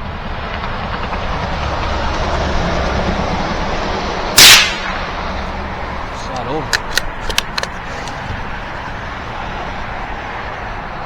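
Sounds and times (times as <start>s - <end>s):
rifle shot with echo: 4.4s - 5.4s.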